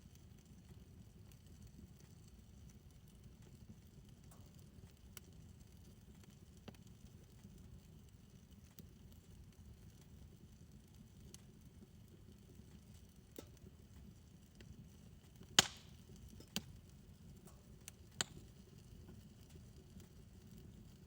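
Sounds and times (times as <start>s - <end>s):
fire crackles and pops: 0.0s - 21.0s
fire rumbling: 0.0s - 21.0s.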